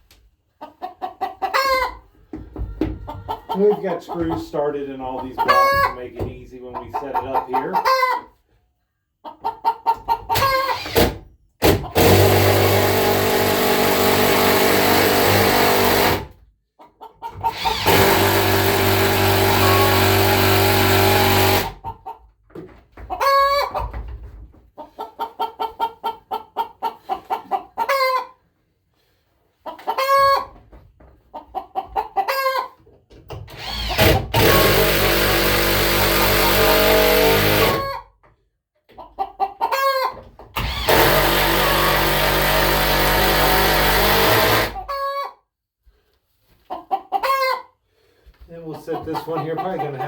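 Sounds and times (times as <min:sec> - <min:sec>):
chickens clucking: 0:00.4 - 0:10.8, 0:16.6 - 0:17.7, 0:21.6 - 0:28.5, 0:29.3 - 0:33.6, 0:37.8 - 0:38.2, 0:38.8 - 0:40.6, 0:44.7 - 0:45.4, 0:46.5 - 0:47.8, 0:48.5 - 0:50.0.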